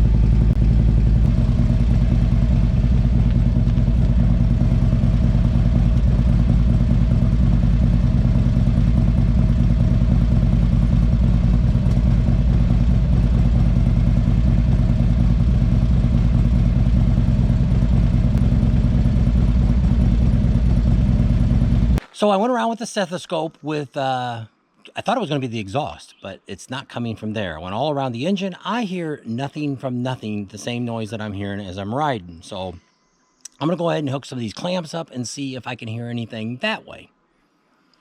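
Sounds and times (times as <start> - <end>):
motorcycle engine idling: 0.0 - 22.0.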